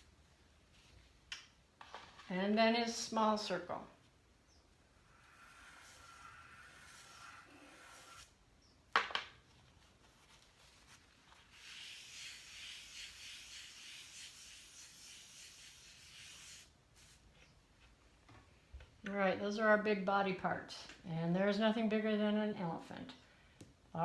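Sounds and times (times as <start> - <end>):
chalk rubbing on paper: 5.1 - 8.3, 11.3 - 17.2.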